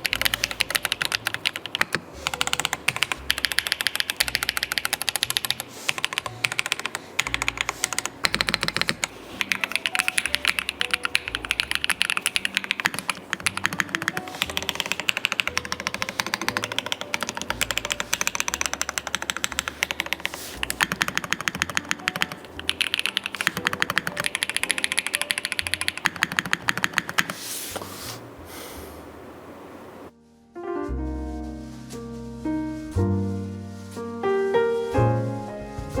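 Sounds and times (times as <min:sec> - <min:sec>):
fast keyboard typing: 0:00.0 - 0:27.4.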